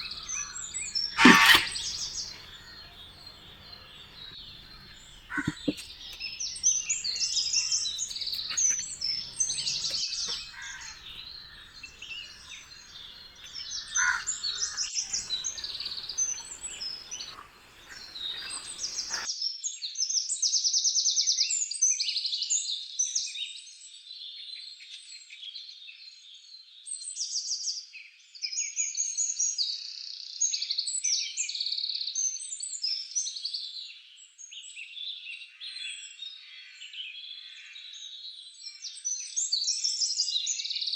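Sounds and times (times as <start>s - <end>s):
birds chirping and trilling: 0.0s - 19.3s.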